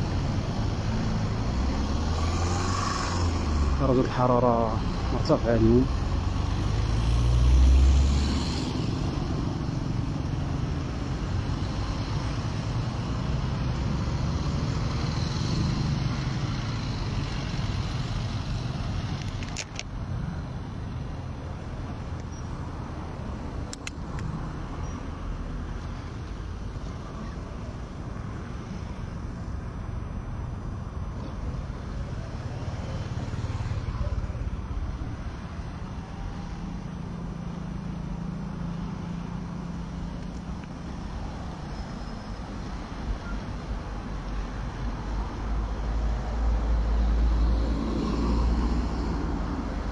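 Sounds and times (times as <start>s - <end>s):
road traffic: 0.0s - 49.9s
sharp clicks: 19.1s - 20.0s, 23.6s - 24.4s.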